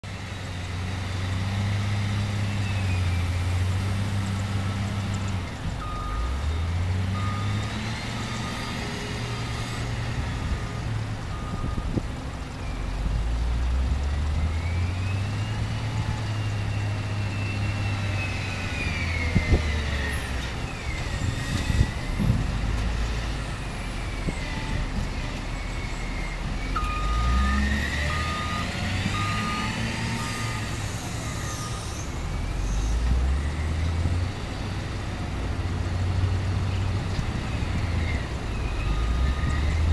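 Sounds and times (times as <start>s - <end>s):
wheel loader diesel engine revving: 0.0s - 39.9s
reversing alarm beeping: 5.8s - 10.6s, 11.3s - 12.0s, 25.7s - 33.8s, 38.6s - 39.9s.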